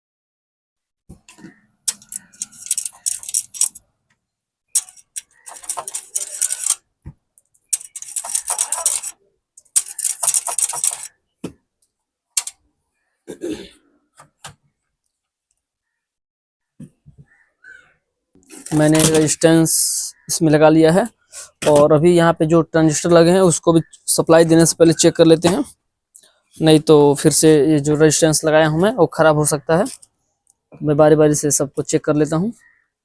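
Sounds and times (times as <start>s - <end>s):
scraping and rattling of components: 1.2s - 3.8s, 4.7s - 11.1s, 18.4s - 19.4s
sharp clicks: 4.7s - 6.8s, 7.4s - 11.1s, 11.8s - 12.6s.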